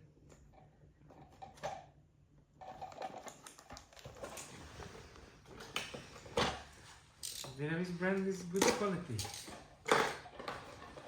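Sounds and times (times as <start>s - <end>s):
part being handled with clicks: 7.2s - 7.6s.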